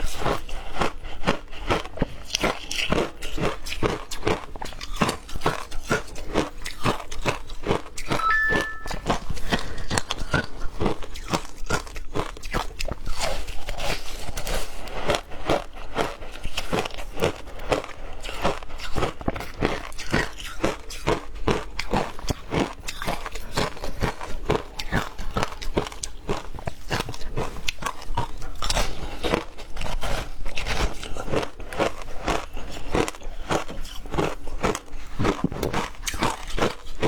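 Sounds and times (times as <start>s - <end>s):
ice being chewed: 0.0s - 8.8s, 10.3s - 37.0s
brief high tone: 8.1s - 9.2s.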